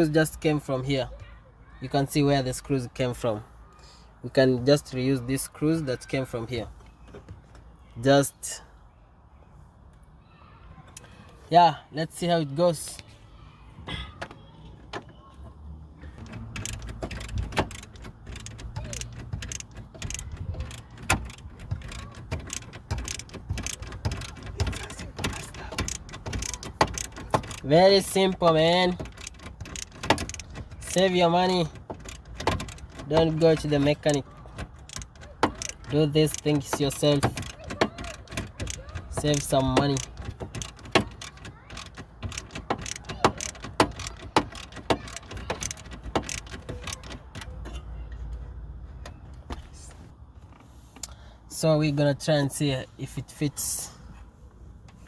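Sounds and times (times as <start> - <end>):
clicks and knocks on metal: 14.2 - 48.4.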